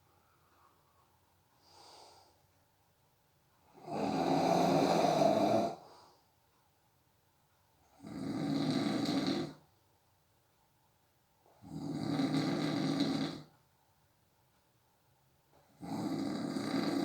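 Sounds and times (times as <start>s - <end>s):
faint breath: 0.0s - 2.5s, 5.0s - 6.4s
person snoring: 3.7s - 5.9s, 8.0s - 9.6s, 11.6s - 13.5s, 15.8s - 17.0s.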